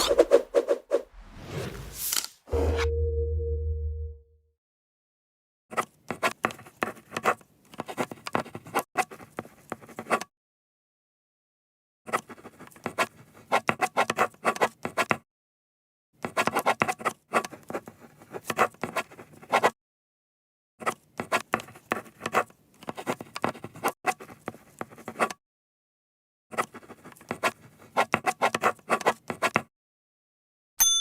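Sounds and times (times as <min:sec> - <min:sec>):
pen scratching on paper: 0:00.0 - 0:02.2, 0:05.7 - 0:10.3, 0:12.1 - 0:15.2, 0:16.2 - 0:19.7, 0:20.8 - 0:25.4, 0:26.5 - 0:29.7.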